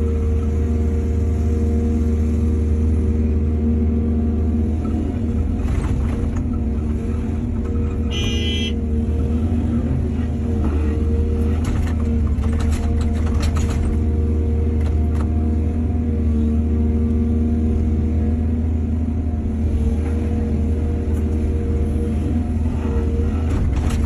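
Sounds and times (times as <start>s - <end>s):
excavator diesel engine running: 0.0s - 24.0s
clanks and rattles: 11.5s - 14.1s.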